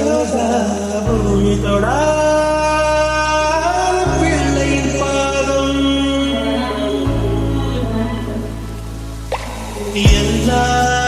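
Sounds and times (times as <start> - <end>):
instrumental music: 0.0 - 11.0.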